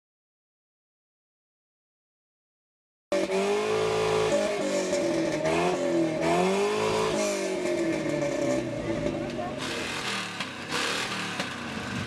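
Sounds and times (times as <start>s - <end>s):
car engine revving: 3.1s - 12.0s.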